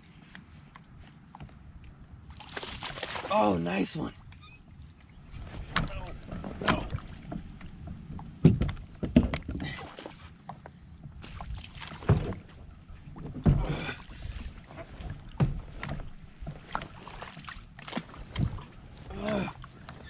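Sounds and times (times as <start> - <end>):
knocks on kayak hull: 5.7 - 9.6.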